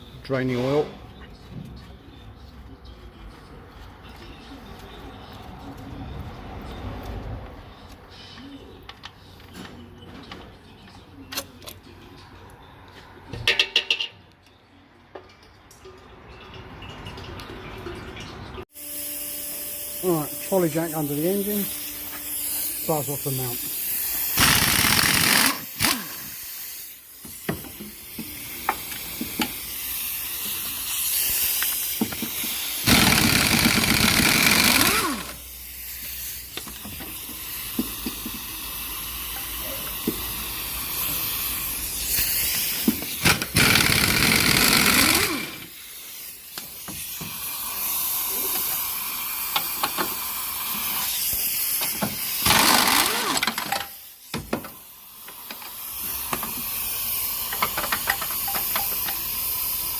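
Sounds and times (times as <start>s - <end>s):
impact wrench rattling: 23.7s - 26.4s, 31.6s - 35.4s, 42.1s - 45.7s, 51.8s - 56.8s, 57.4s - 59.3s.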